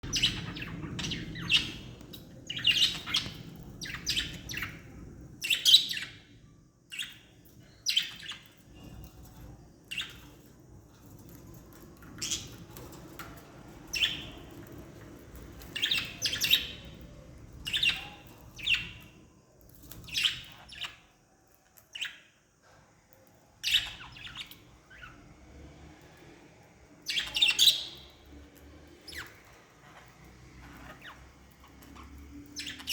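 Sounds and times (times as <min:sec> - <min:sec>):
budgerigars chirping: 0:00.0 - 0:06.2, 0:13.9 - 0:14.5, 0:15.5 - 0:17.0, 0:17.6 - 0:19.2, 0:23.6 - 0:25.2, 0:27.1 - 0:28.3, 0:29.0 - 0:32.9.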